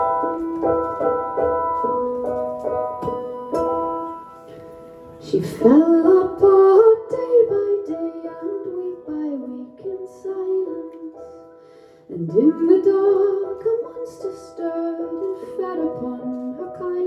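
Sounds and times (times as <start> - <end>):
keyboard chords: 0.0 - 15.2
woman singing wordlessly: 5.2 - 11.4, 12.1 - 17.0.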